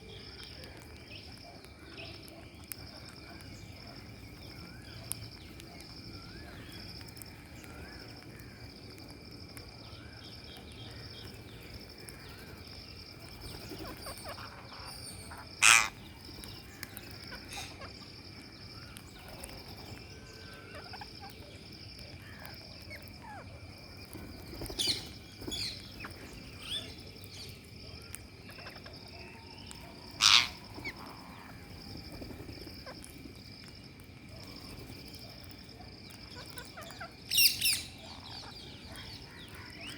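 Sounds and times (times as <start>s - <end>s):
parakeet calls: 13.5s - 18.0s, 29.7s - 31.1s, 36.4s - 39.9s
parakeet shrieks: 15.6s - 16.0s, 30.2s - 30.6s.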